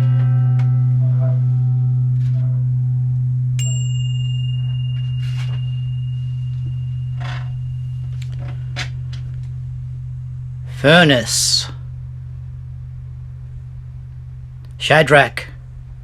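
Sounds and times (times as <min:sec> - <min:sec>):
low steady hum: 0:00.0 - 0:16.0
thin high steady tone: 0:03.6 - 0:12.8.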